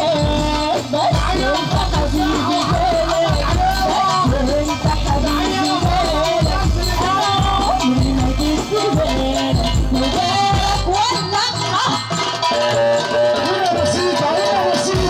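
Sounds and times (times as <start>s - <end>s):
pounding bass beat: 0.0s - 11.0s
ornamented melody line: 0.0s - 15.0s.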